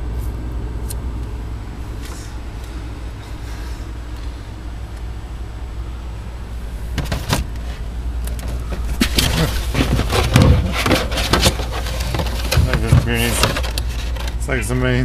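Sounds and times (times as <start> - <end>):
refrigerator hum: 0.0 - 15.0
food packages knocking and rustling: 6.9 - 7.6, 8.3 - 14.4.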